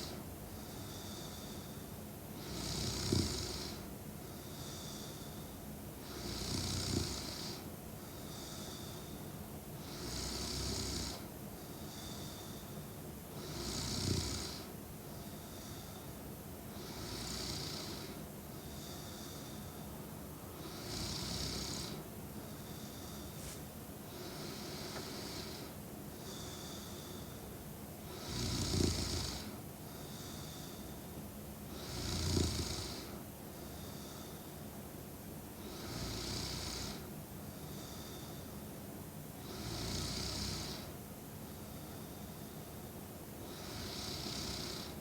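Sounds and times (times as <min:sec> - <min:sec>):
woman snoring: 0:02.4 - 0:03.8, 0:06.0 - 0:07.7, 0:13.4 - 0:14.7, 0:16.8 - 0:18.2, 0:20.6 - 0:22.0, 0:28.1 - 0:29.6, 0:31.7 - 0:33.2, 0:35.6 - 0:37.1, 0:39.4 - 0:40.9, 0:43.5 - 0:45.0.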